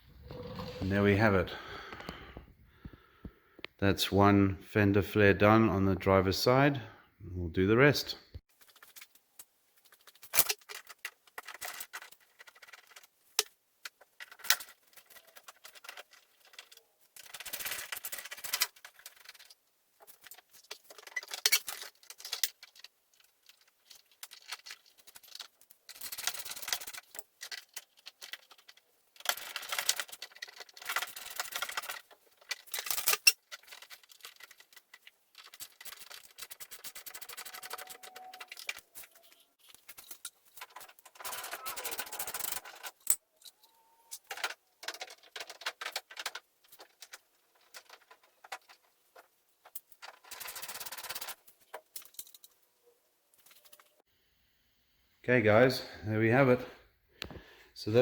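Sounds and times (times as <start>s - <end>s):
scraping and rustling: 0.0s - 1.1s, 8.5s - 52.6s.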